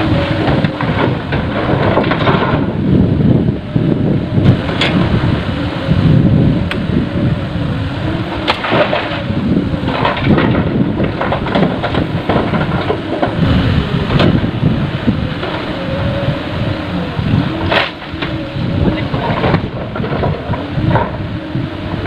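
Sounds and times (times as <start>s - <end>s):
heavy diesel machinery running: 0.0s - 22.0s
rocks dropping into steel truck bed: 0.6s - 2.7s, 8.4s - 9.3s.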